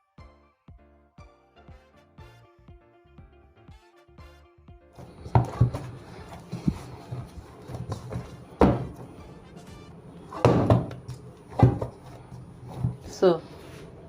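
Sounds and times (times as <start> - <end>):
dough thumping in a bowl: 5.0 - 9.1, 10.3 - 12.1.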